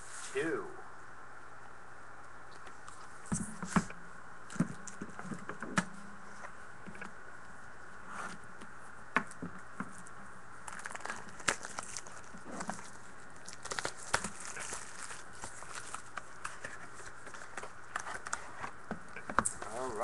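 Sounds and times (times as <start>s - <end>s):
packaging crinkling and tearing: 10.6s - 20.0s.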